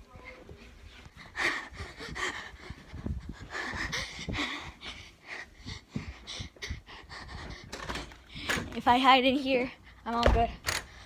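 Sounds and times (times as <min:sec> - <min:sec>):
person breathing hard: 0:01.1 - 0:08.8.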